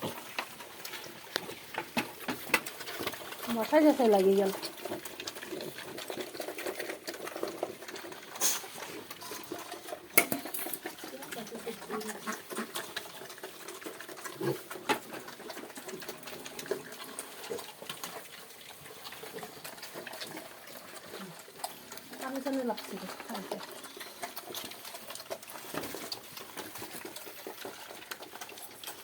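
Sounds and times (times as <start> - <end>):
pigs grunting low: 10.4 - 29.0.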